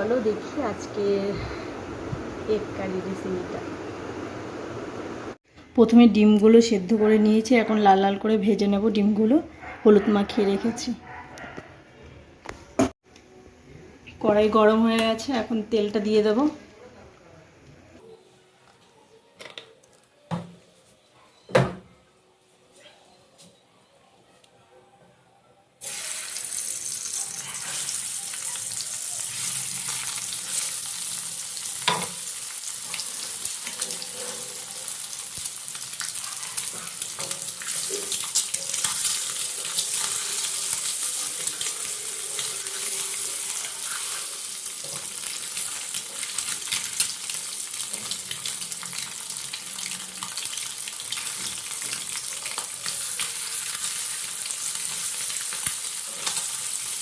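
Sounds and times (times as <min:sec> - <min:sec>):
eggs sizzling in hot oil: 0:25.8 - 0:57.0.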